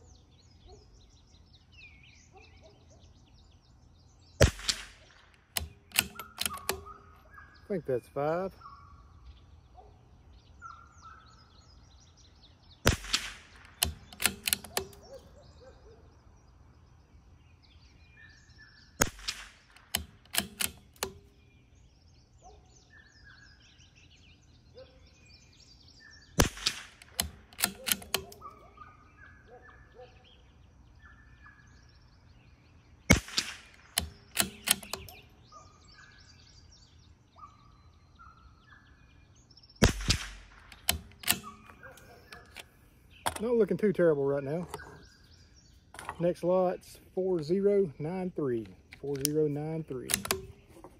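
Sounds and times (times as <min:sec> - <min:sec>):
birds chirping faintly: 0:00.0 - 0:50.9
rifle shots: 0:04.4 - 0:07.0, 0:12.8 - 0:15.1, 0:19.0 - 0:21.3, 0:26.4 - 0:28.5, 0:33.1 - 0:35.2, 0:39.8 - 0:42.6, 0:50.0 - 0:50.6
rifle bolt clicks: 0:04.4 - 0:07.2, 0:12.8 - 0:15.3, 0:19.0 - 0:21.4, 0:26.4 - 0:28.6, 0:33.1 - 0:35.2, 0:39.8 - 0:43.6, 0:44.6 - 0:45.0, 0:48.6 - 0:50.9.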